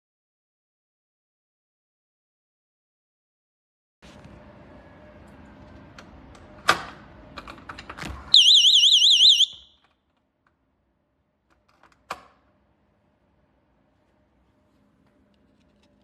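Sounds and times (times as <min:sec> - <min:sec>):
warbling electronic alarm tone: 0:08.4 - 0:09.7.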